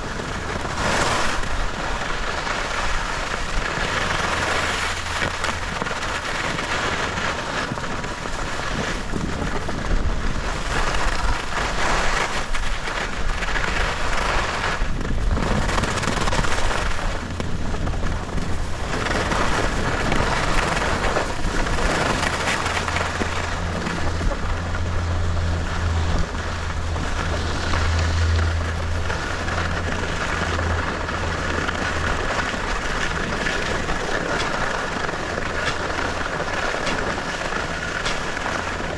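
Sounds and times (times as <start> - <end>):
skis hissing over snow: 0.0 - 24.8, 25.6 - 38.9
wind on microphone: 0.0 - 38.9
low rumble: 12.4 - 38.9.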